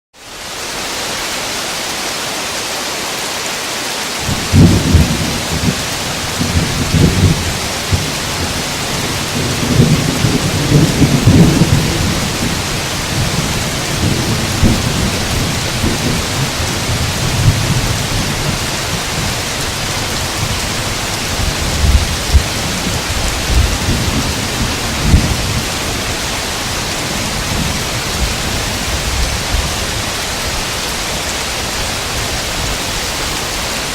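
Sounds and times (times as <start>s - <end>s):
steady rain: 0.2s - 33.9s
rolling thunder: 4.2s - 30.1s.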